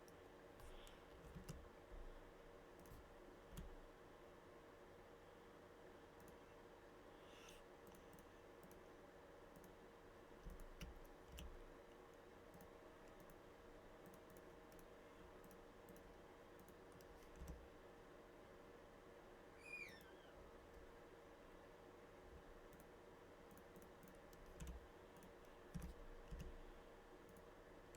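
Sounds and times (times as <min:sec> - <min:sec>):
computer mouse clicks: 0:00.0 - 0:01.6, 0:02.8 - 0:03.8, 0:06.2 - 0:06.4, 0:07.4 - 0:08.9, 0:09.5 - 0:09.8, 0:10.4 - 0:11.6, 0:12.5 - 0:13.4, 0:14.0 - 0:17.6, 0:22.6 - 0:22.9, 0:23.5 - 0:26.6, 0:27.2 - 0:27.5
low steady hum: 0:00.0 - 0:27.9.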